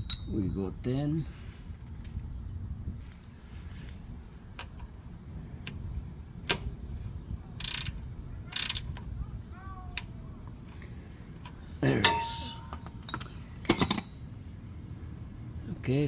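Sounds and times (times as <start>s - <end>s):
ratchet wrench ratcheting: 7.6s - 9.0s
rattling ratchet pawl: 7.6s - 9.0s
torque wrench clicks: 7.6s - 9.1s.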